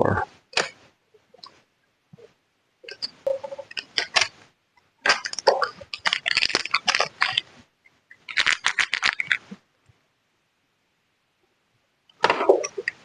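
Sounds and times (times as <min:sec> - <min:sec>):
small metal parts clicking and rattling: 0:02.9 - 0:04.4, 0:05.0 - 0:07.5, 0:08.1 - 0:09.5.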